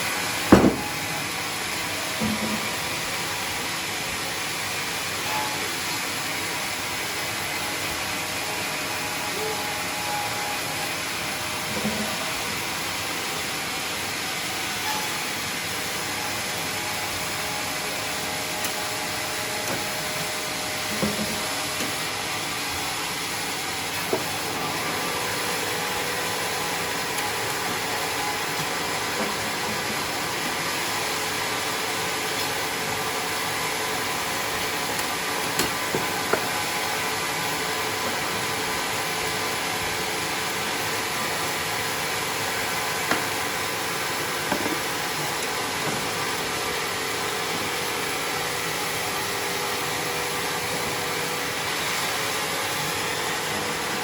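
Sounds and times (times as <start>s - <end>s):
sawmill machine hissing: 0.0s - 54.0s
short knocks: 0.5s - 0.9s.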